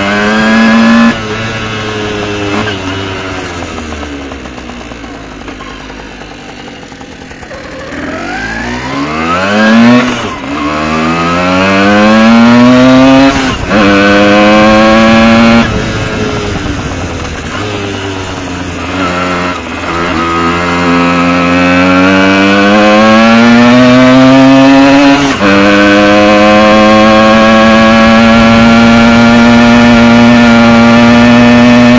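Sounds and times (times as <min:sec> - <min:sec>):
moped engine revving: 0:00.0 - 0:31.9.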